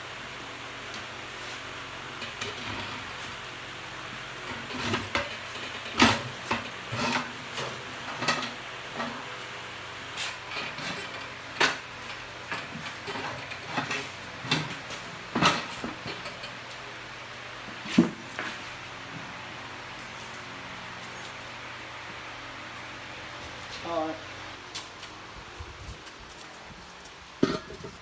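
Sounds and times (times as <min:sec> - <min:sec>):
hard objects clattering and knocking: 0:27.3 - 0:28.0.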